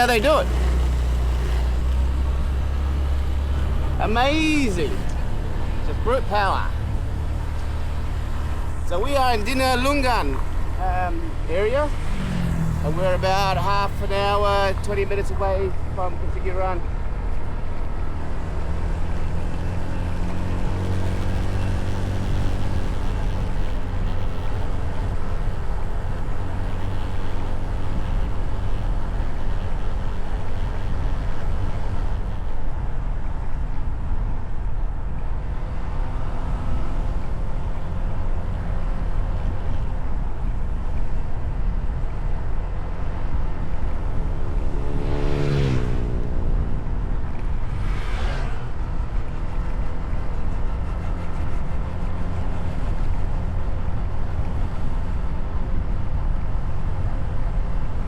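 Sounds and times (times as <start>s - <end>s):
vehicle passing by: 0.0s - 32.9s, 41.8s - 53.9s
motorcycle engine running: 0.0s - 58.0s
wind on microphone: 0.0s - 58.0s.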